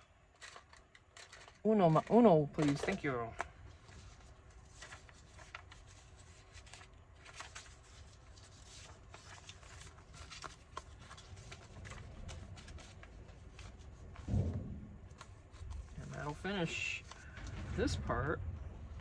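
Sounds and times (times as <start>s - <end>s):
paper and card rustling: 0.3s - 18.3s
low steady rumble: 11.0s - 19.0s.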